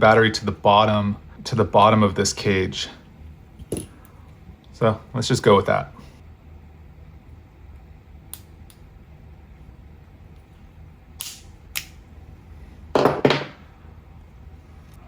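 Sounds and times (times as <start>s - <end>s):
sharp plastic snaps: 11.2s - 12.0s.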